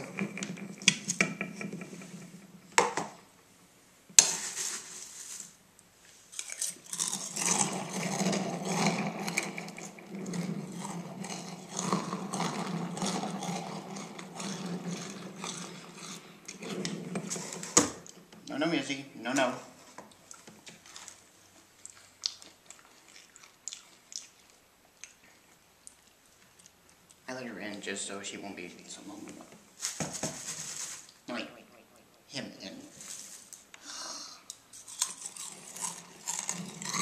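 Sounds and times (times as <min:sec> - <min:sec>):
cereal crunching while chewed: 0:06.3 - 0:18.2, 0:20.1 - 0:27.3, 0:34.8 - 0:37.0.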